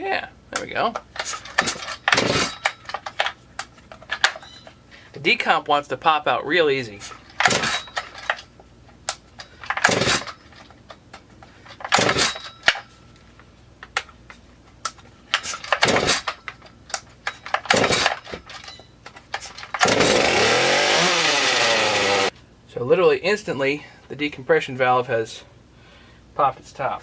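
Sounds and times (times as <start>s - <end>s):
chainsaw recoil starter pulls: 9.4s - 10.6s, 17.3s - 18.6s, 19.3s - 22.3s
chainsaw engine running: 19.8s - 22.3s.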